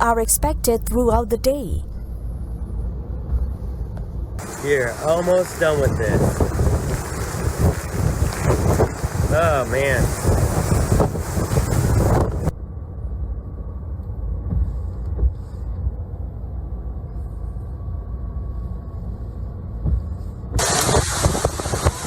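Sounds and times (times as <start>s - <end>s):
muffled low rumble: 0.0s - 22.0s
storm wind on microphone: 4.4s - 12.6s, 20.6s - 22.0s.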